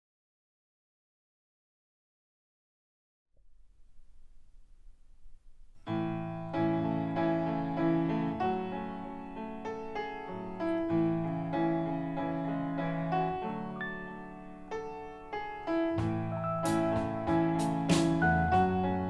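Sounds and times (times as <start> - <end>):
piano song over loudspeakers: 5.8 - 19.0.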